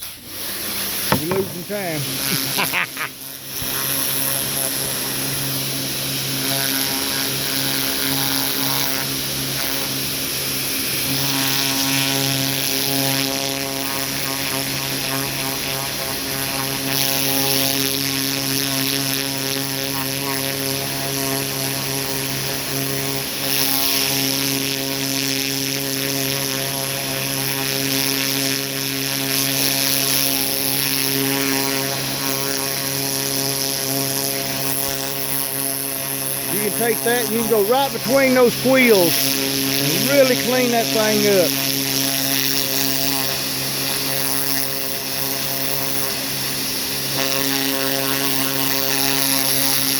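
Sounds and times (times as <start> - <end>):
pressure washer motor hum: 0.9 - 2.6.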